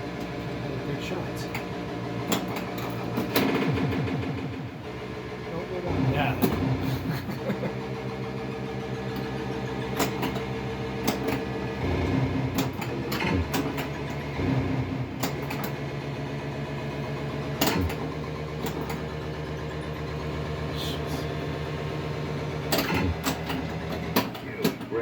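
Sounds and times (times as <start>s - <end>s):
pinball electronic drone: 0.0s - 25.0s
pinball clicks and knocks: 0.1s - 0.6s, 1.4s - 4.8s, 8.2s - 20.6s, 21.4s - 25.0s.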